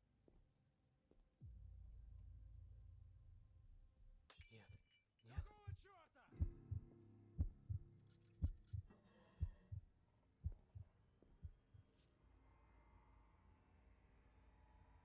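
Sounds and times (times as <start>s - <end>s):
heartbeat thumps: 5.4s - 11.9s.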